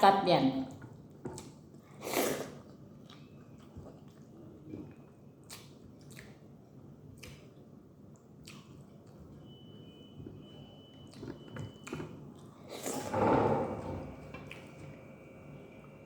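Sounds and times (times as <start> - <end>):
chewing and wet mouth noises: 0.7 - 9.6, 10.2 - 13.1, 14.3 - 15.0.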